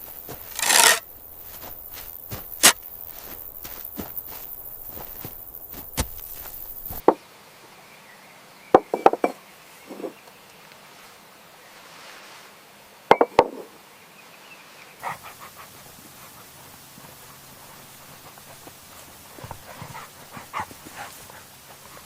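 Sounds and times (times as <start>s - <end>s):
puppies panting: 15.0s - 22.0s.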